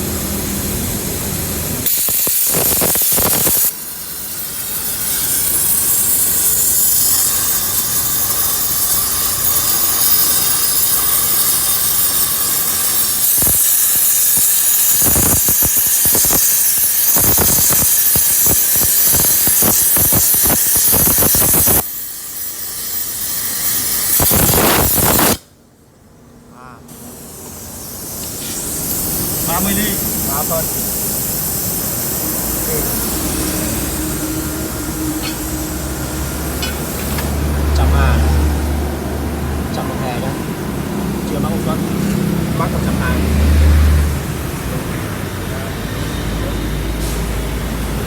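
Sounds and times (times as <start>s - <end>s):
plasma cutter hissing and crackling: 0.5s - 25.5s, 26.9s - 38.8s.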